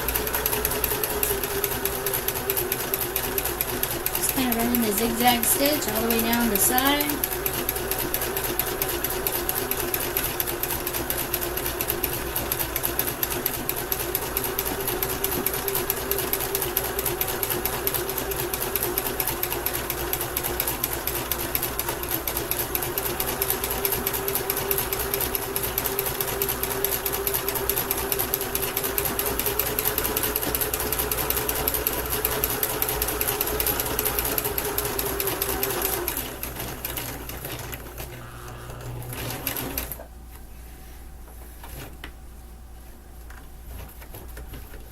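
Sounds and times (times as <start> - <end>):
sewing machine stitching: 0.0 - 40.1.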